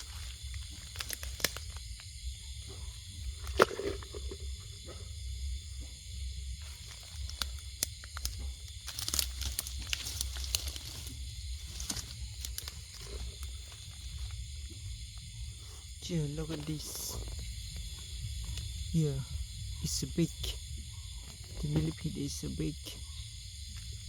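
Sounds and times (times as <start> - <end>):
dry leaves rustling and crunching: 0.0 - 2.1, 6.6 - 19.2
low rumble: 0.0 - 24.0
steady high-pitched hiss: 0.0 - 24.0.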